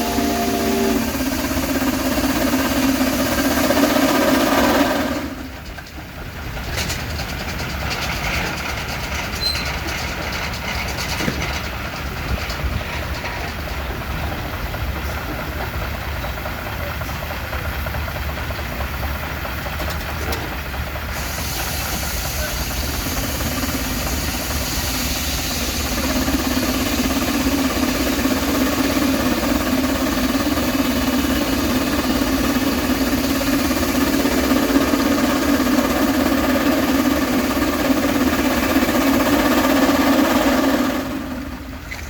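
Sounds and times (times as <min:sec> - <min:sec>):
steam whistle blowing: 0:00.0 - 0:01.6
steam engine running: 0:00.0 - 0:42.0.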